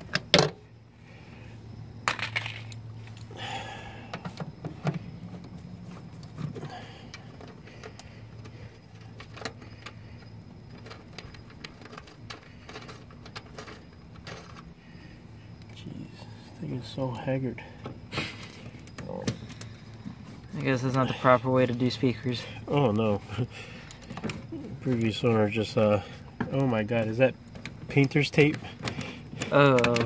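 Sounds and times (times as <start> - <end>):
low steady hum: 0.0 - 30.0
tools clicking and rattling on trim: 26.4 - 30.0.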